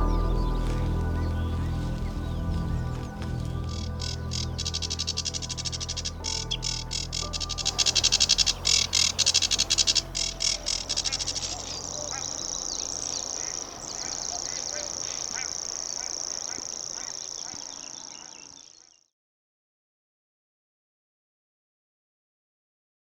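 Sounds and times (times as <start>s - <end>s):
bird reeling trill: 0.0s - 19.0s
bird rattling chatter: 3.7s - 18.3s
short bird chirps: 3.7s - 19.0s.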